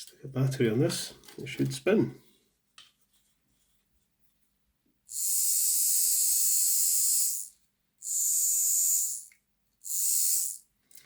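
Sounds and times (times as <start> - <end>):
small electric motor whirring: 5.1 - 10.6.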